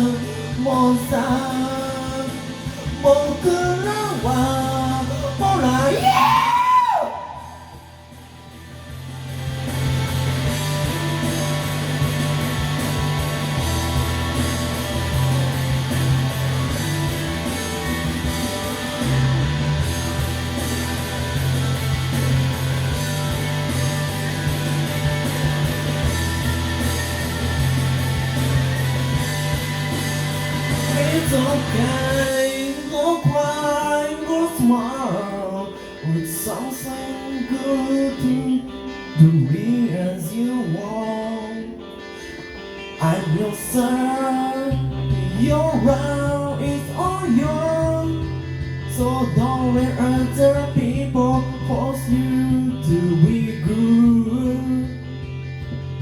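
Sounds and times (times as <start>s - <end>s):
guitar pop-rock song: 0.0s - 56.0s
low bass line: 7.3s - 32.3s, 44.7s - 56.0s.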